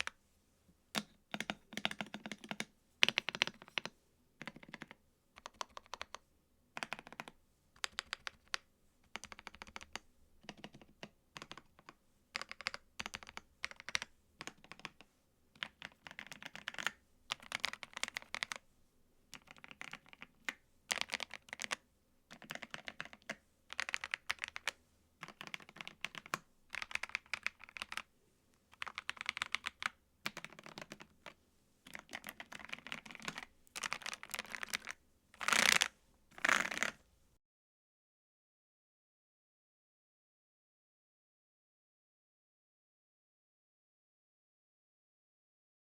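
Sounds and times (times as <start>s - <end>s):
typing on mechanical keyboard: 1.0s - 6.2s, 6.8s - 18.6s, 19.3s - 28.1s, 28.7s - 37.0s.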